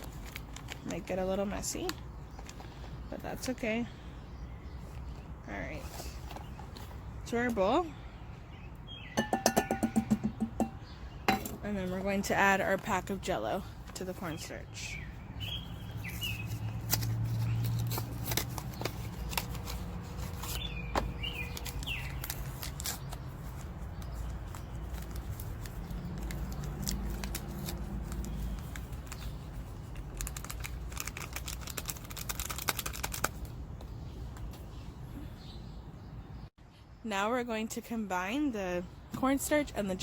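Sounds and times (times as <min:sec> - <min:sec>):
packet crinkling and tearing: 0:00.0 - 0:01.0, 0:21.2 - 0:33.5
rustling: 0:15.4 - 0:33.5.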